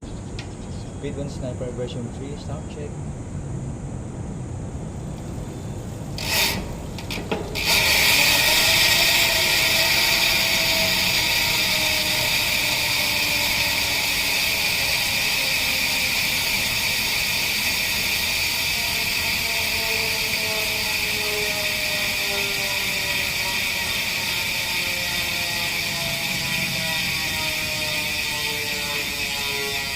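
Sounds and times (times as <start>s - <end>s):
bicycle hub ratcheting buzz: 4.9s - 29.9s.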